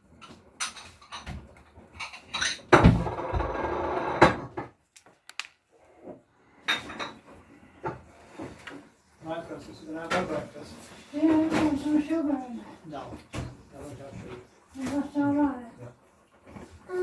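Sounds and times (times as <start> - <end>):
dishes knocking and clicking: 0.2 - 4.8.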